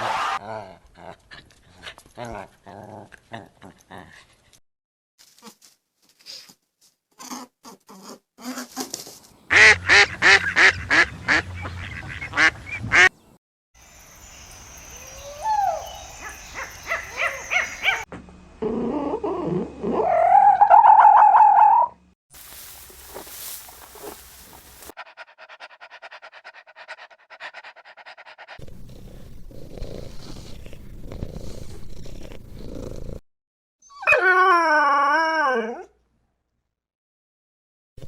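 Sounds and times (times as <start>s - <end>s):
dog howling: 15.0s - 18.1s
dog yipping: 15.4s - 18.1s.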